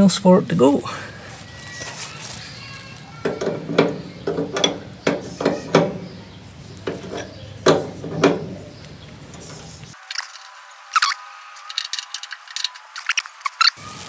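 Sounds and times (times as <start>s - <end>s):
metal tools knocking and clanking: 3.2s - 13.8s.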